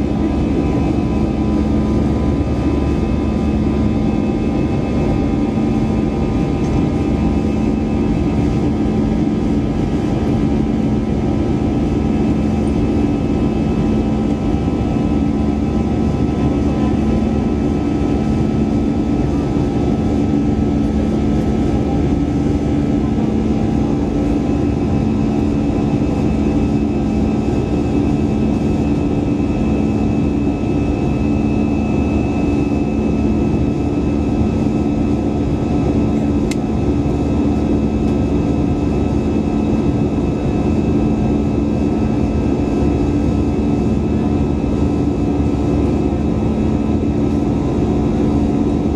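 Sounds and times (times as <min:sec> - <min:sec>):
jet engines running: 0:00.0 - 0:48.9.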